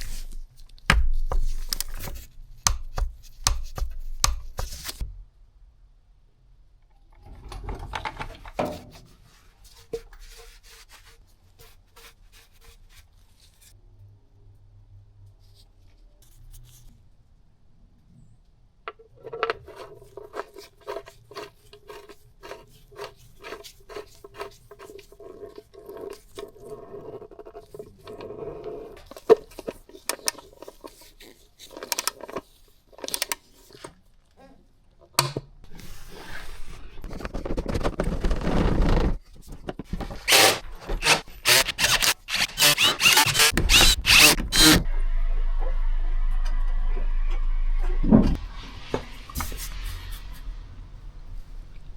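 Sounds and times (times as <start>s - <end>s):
ratchet clicking: 40.3s - 44.8s.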